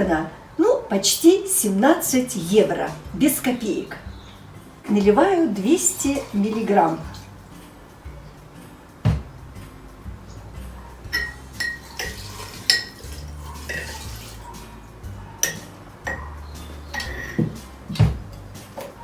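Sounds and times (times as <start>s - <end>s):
knock: 9.1s - 9.3s
glass clinking on glass: 11.1s - 14.0s, 15.4s - 16.3s, 16.9s - 18.5s
liquid pouring into jar: 11.2s - 14.5s.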